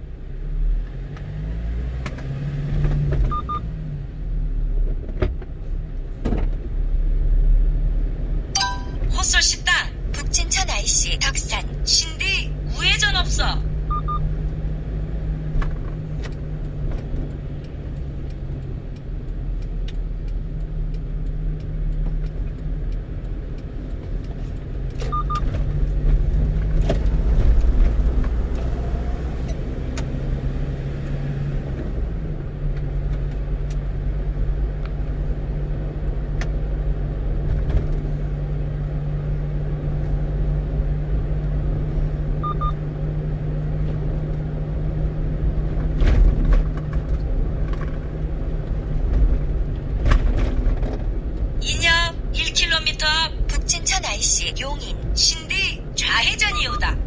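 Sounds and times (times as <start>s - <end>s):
truck engine and road noise: 0.0s - 57.0s
double electronic beep: 8.6s - 9.7s, 13.3s - 14.3s.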